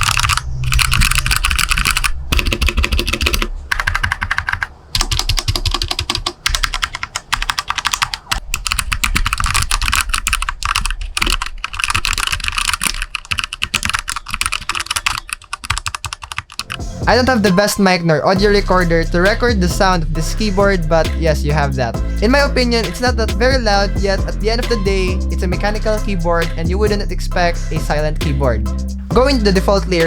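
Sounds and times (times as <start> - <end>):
mechanical keyboard typing: 0.0 - 16.8.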